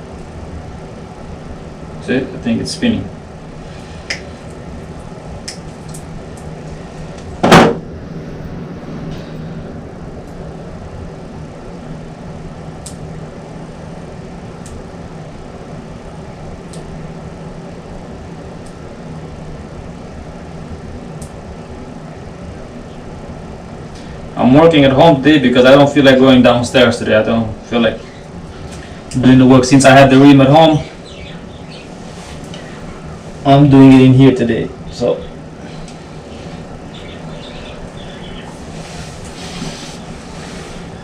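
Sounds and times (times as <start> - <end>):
steady low hum: 0.0 - 41.0
loud knock: 7.4 - 7.8.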